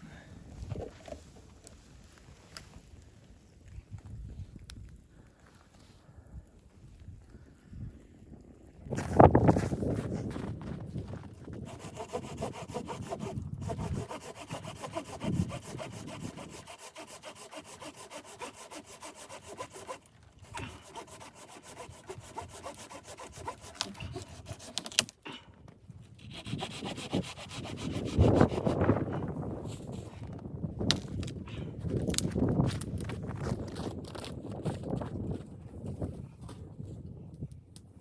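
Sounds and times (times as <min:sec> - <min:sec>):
hand saw cutting wood: 0:11.2 - 0:25.2, 0:26.1 - 0:30.1.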